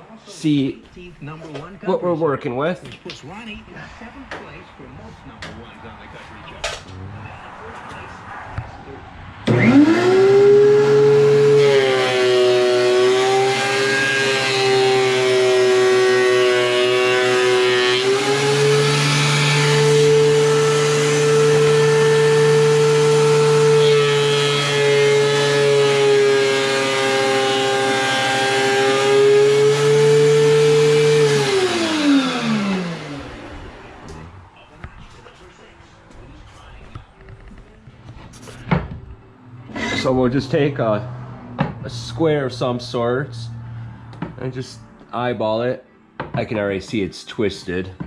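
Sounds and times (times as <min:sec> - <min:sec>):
thickness planer motor whine: 0:09.4 - 0:34.4, 0:39.6 - 0:41.8.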